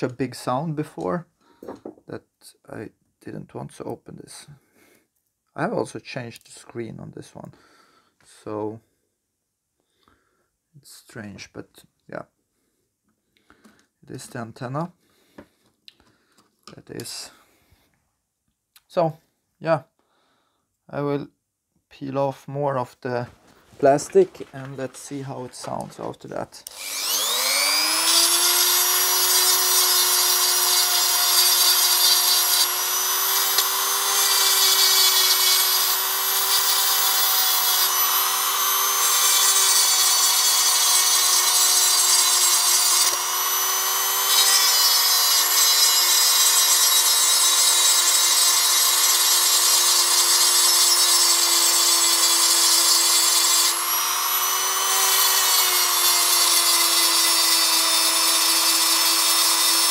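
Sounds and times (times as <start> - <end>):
electric rotary tool spinning: 26.7 - 59.9.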